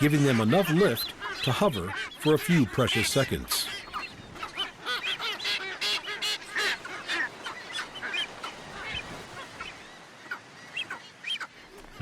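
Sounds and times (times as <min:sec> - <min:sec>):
terns calling: 0:00.0 - 0:12.0.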